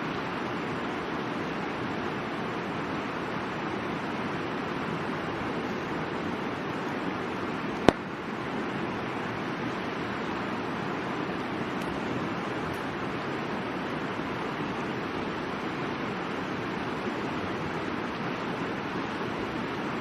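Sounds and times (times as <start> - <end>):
river rushing: 0.0 - 20.0
campfire wood popping and crackling: 11.7 - 12.9.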